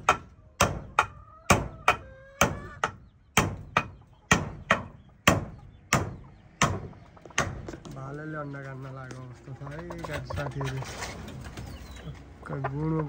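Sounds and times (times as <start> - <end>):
sharp chopping knocks: 0.0 - 7.9.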